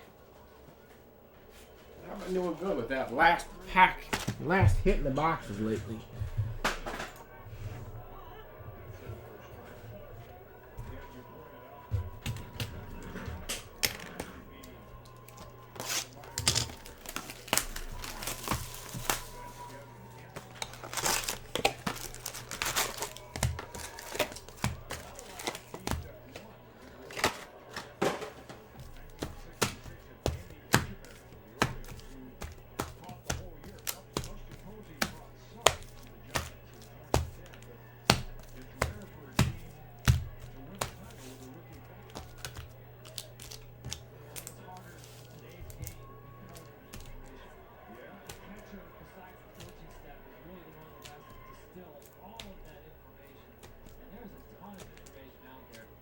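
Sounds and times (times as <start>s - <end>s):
cards tapped on a table: 4.0s - 4.7s, 11.9s - 47.4s
foil wrappers tearing and crinkling: 13.5s - 47.5s.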